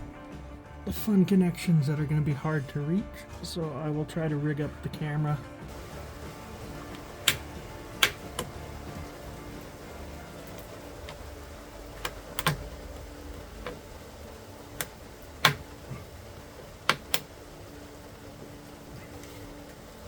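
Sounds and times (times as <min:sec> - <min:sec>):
hard objects clicking and knocking: 0:10.4 - 0:17.4.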